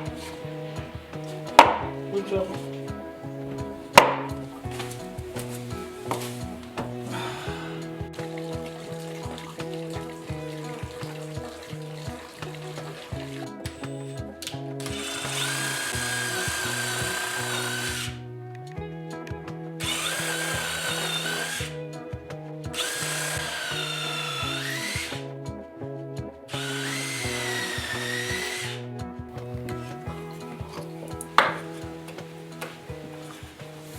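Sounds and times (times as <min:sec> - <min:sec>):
background music: 0:00.0 - 0:33.9
small electric motor whining: 0:03.4 - 0:18.2, 0:19.8 - 0:21.8, 0:22.8 - 0:25.3, 0:26.6 - 0:28.8.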